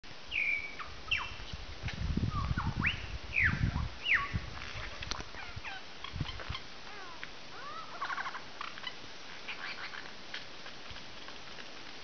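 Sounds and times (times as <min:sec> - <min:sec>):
bird whistling song: 0:00.3 - 0:01.6, 0:02.3 - 0:04.4.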